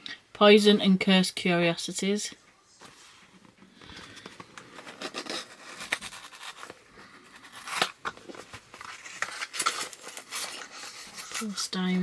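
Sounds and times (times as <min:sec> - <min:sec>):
packaging rustling and tearing: 0:03.9 - 0:12.0.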